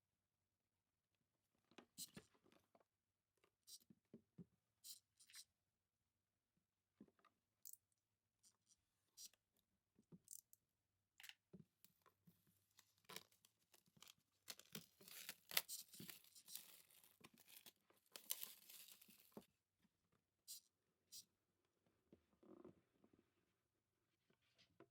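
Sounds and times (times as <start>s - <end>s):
packaging tearing: 14.0s - 19.3s.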